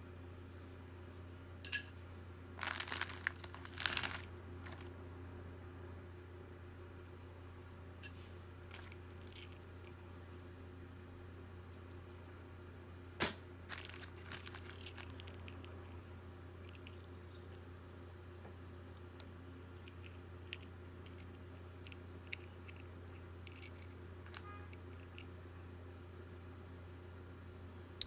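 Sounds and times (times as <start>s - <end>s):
steady low hum: 0.0s - 28.0s
jewelry clicking and rattling: 2.6s - 4.8s, 8.0s - 9.7s, 13.7s - 15.7s, 19.8s - 25.3s.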